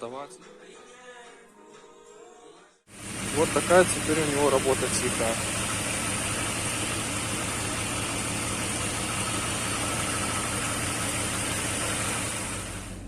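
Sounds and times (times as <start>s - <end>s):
car engine idling: 2.9s - 13.0s.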